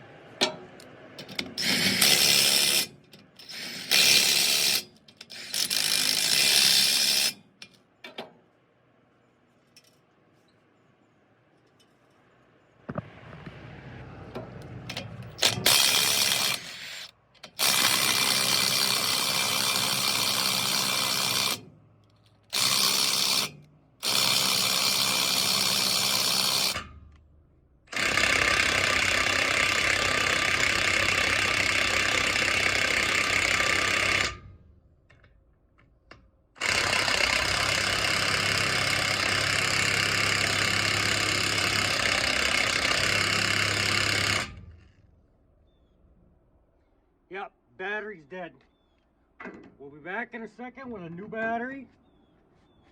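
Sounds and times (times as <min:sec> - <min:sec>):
impact wrench hammering on bolts: 0:14.9 - 0:21.6.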